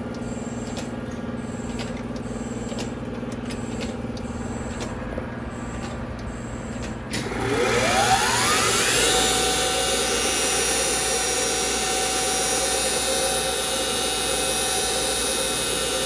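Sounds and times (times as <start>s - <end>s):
motor whine spinning up: 5.6s - 16.0s.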